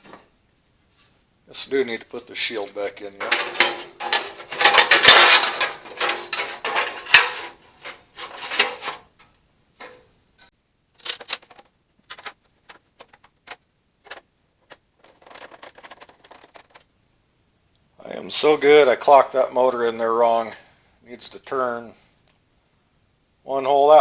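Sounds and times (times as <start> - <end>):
metal parts clattering and scraping: 2.4 - 10.1, 11.0 - 16.9
metal clicks and clinks: 3.2 - 9.0.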